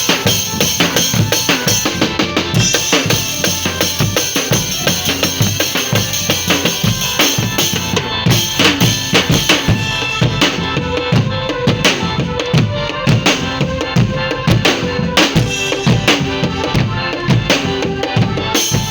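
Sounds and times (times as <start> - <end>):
steady drum beat: 0.0 - 18.9
sustained pitched instruments: 0.0 - 18.9.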